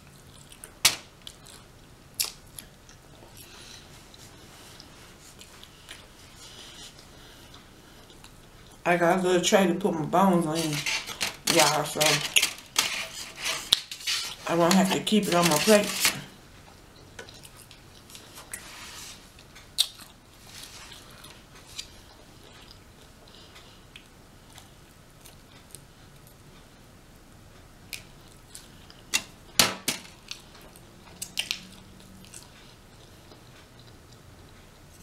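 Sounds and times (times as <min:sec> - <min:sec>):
close-up chewing: 0:00.0 - 0:08.8, 0:16.5 - 0:26.4, 0:30.2 - 0:35.0.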